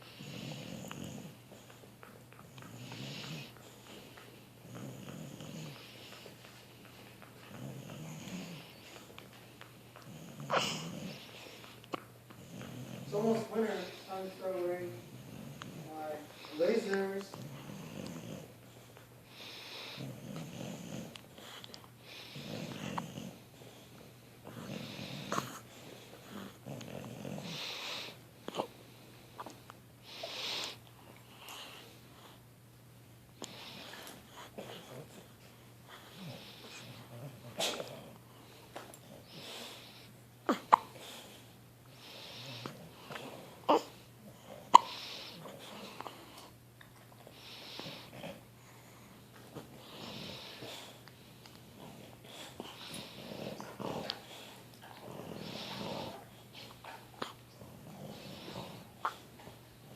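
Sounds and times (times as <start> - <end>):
heavy breathing: 2.6 - 32.5, 33.4 - 46.6, 47.3 - 59.6
dog hiccuping: 40.5 - 41.0, 44.7 - 45.0.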